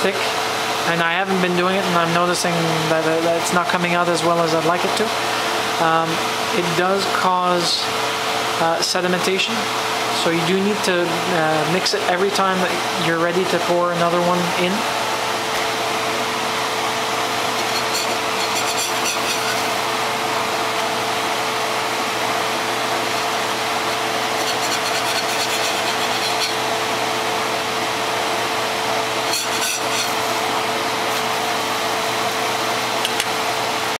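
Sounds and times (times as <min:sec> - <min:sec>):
constant hum: 0:00.0 - 0:34.0
griddle hissing: 0:14.6 - 0:33.0.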